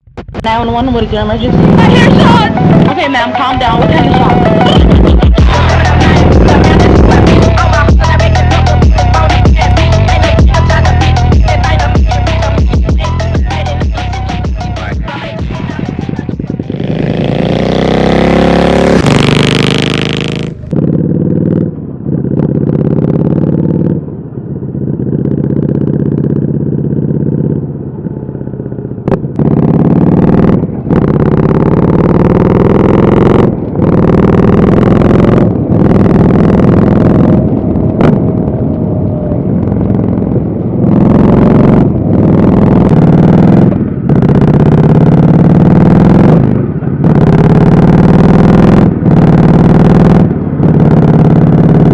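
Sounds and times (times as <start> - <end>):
exhaust cracks: 0.0 - 51.9
motorcycle engine revving: 0.0 - 51.9.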